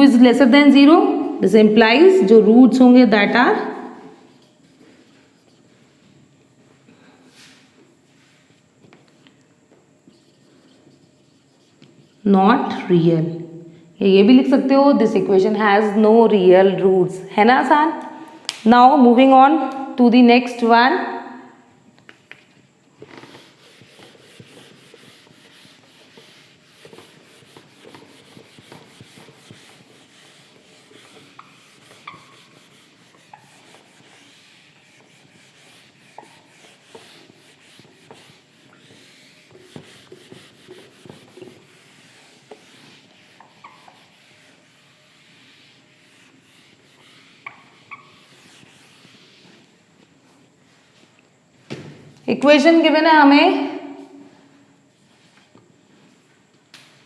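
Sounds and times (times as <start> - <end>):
pen scratching while handwriting: 23.1 - 49.3.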